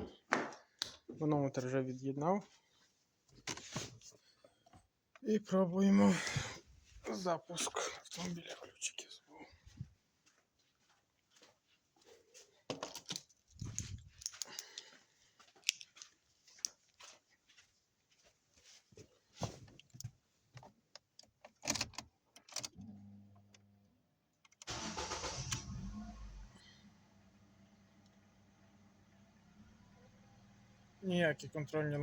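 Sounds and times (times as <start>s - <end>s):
car engine cranking and starting: 24.6s - 31.0s.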